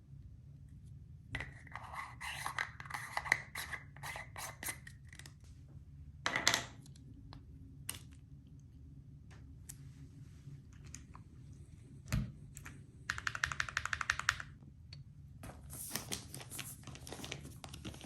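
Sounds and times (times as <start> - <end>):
mechanical keyboard typing: 13.1 - 14.5.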